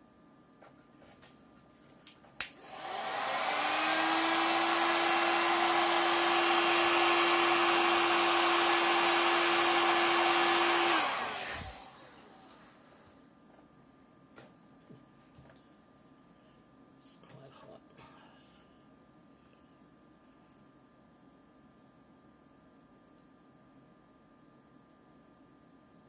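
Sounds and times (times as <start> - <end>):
blower switch click: 2.4 - 2.6
hot-air blower fan blowing: 2.4 - 13.1.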